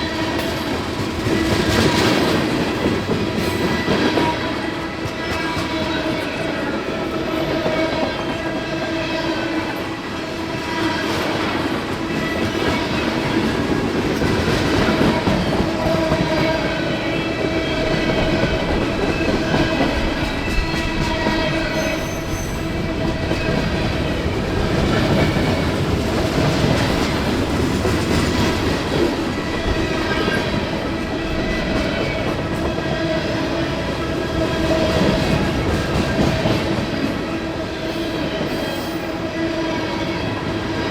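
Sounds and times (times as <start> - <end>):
freight train wheels rumbling: 0.0 - 40.9
squealing wheels: 19.2 - 23.9, 37.9 - 39.2.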